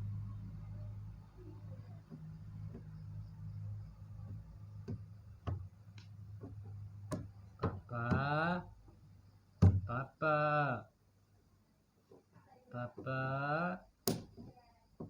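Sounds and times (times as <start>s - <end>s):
low steady hum: 0.0s - 10.9s
small clicks and taps: 4.2s - 7.8s.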